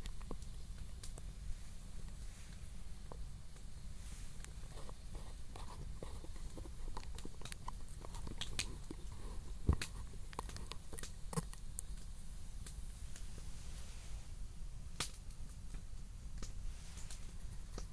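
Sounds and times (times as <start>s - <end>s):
campfire crackling: 0.0s - 17.9s
sharp snap of burning wood: 2.6s - 13.3s, 15.0s - 17.9s.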